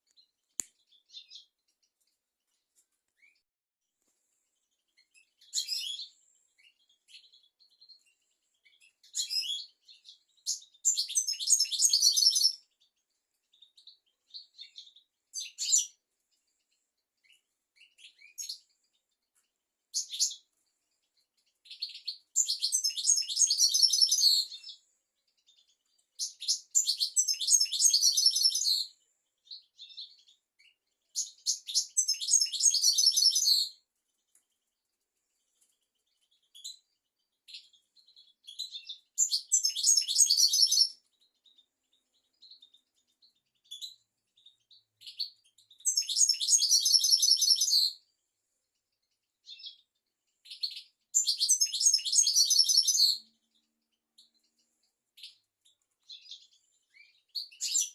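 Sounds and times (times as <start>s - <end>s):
goldfinch twittering: 51.2s - 53.0s.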